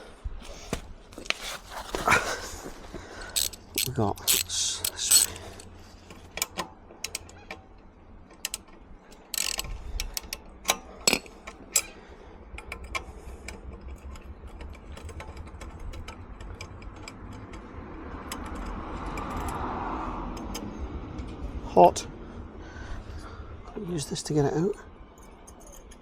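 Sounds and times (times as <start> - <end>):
dense rustle: 0.4 - 4.0
hand tools clicking on metal: 3.2 - 7.4, 8.3 - 12.0.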